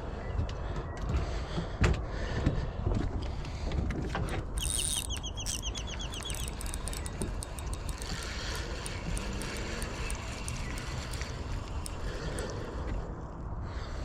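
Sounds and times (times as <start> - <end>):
bird chirping: 4.6 - 11.4.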